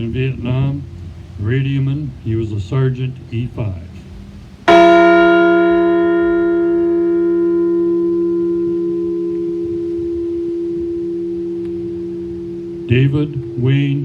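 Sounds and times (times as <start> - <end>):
large bell tolling: 4.7 - 14.0.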